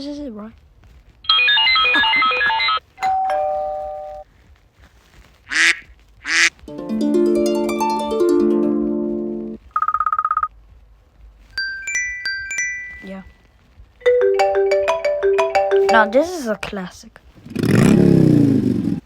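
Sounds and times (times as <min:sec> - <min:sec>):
two-note doorbell chime: 0:02.5 - 0:04.2, 0:14.0 - 0:16.3
duck quacks: 0:05.5 - 0:06.5
harp-like plucked notes: 0:06.7 - 0:09.6, 0:14.0 - 0:16.6.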